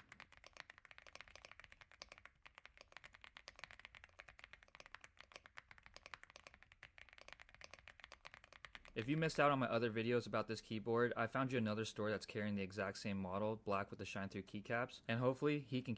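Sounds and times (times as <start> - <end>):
mechanical keyboard typing: 0.0 - 9.0.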